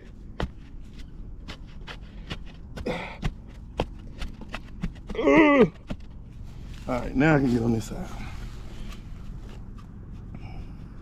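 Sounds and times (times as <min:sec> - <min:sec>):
stick tamping soil dull knocks: 0:00.0 - 0:06.2.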